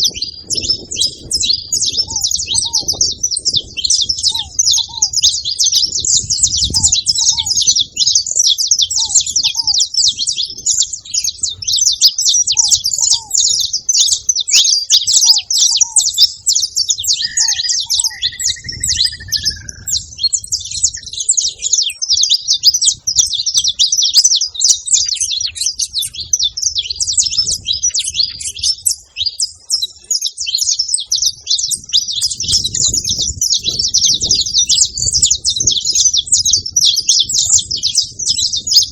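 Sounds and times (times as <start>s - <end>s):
low whistled bird call: 0.0s - 24.0s
finches chirping and singing: 0.0s - 38.9s.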